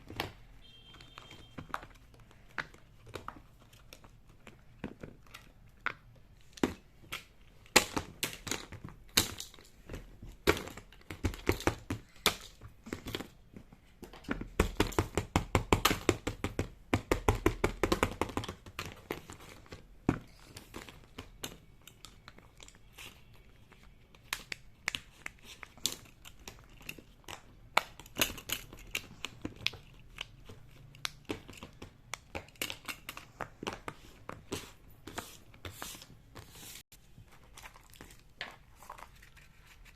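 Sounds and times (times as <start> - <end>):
plastic crinkling: 36.6 - 39.9.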